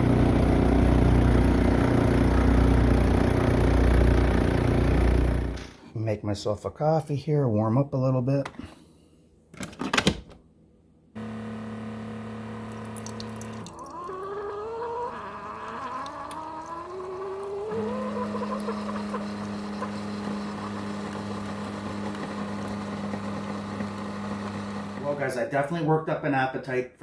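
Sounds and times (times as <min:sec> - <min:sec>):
coffee maker pump humming: 0:00.0 - 0:05.8, 0:11.2 - 0:25.4
liquid streaming into cup: 0:12.6 - 0:25.1.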